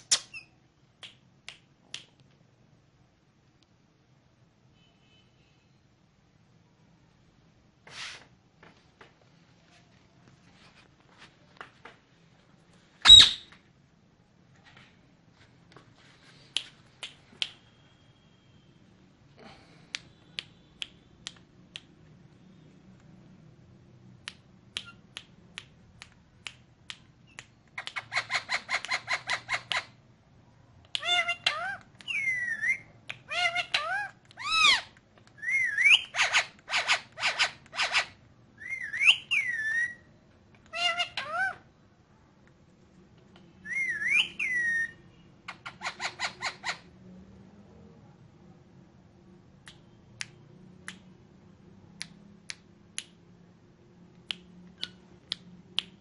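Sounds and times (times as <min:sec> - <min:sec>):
parakeet chirping and squawking: 0:13.0 - 0:13.6, 0:27.8 - 0:30.0, 0:31.0 - 0:40.0, 0:40.7 - 0:41.6, 0:43.7 - 0:47.0.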